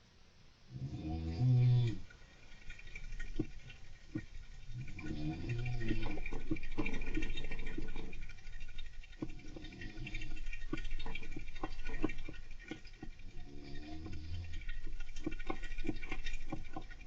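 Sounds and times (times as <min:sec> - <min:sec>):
gentle snoring: 0:00.7 - 0:02.1, 0:04.7 - 0:08.1, 0:13.3 - 0:14.9
hamster scratching and scrabbling: 0:04.9 - 0:17.0.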